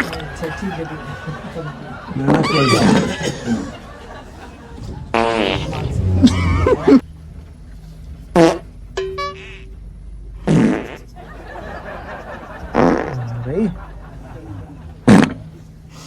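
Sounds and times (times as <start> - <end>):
fart sounds: 4.8 - 7.0, 8.4 - 8.7, 10.4 - 11.1, 12.7 - 13.7, 15.0 - 15.5.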